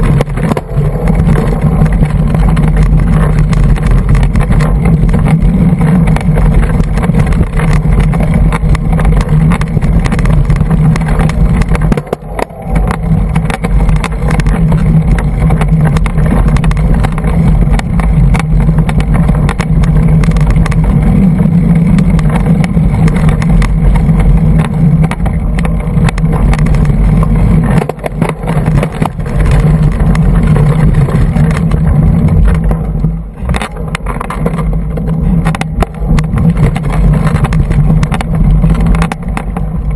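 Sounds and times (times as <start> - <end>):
mountain bike rattling and knocking: 0.0 - 39.9
wind buffeting microphone: 0.0 - 39.9.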